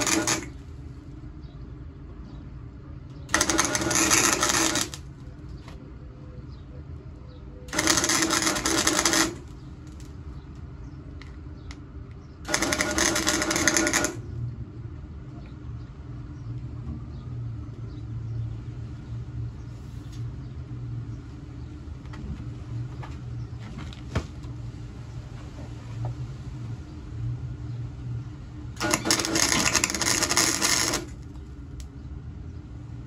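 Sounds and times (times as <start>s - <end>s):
welding arc crackling: 0.0s - 0.6s, 3.3s - 5.2s, 7.7s - 10.1s, 12.5s - 14.2s, 28.8s - 31.9s
low steady hum: 0.0s - 33.0s.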